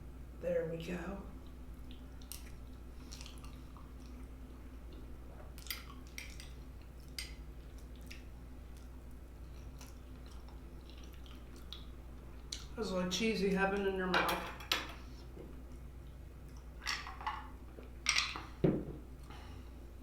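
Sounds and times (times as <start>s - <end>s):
wet chewing mouth sounds: 1.4s - 12.8s.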